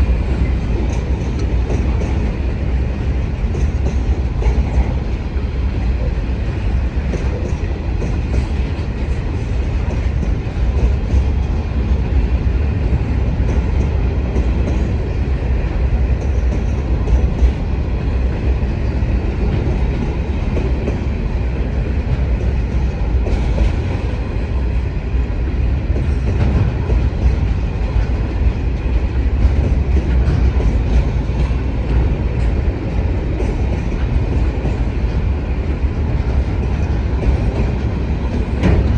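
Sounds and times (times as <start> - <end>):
freight train rumbling past: 0.0 - 38.9
wheels clicking over rail joints: 25.9 - 38.9.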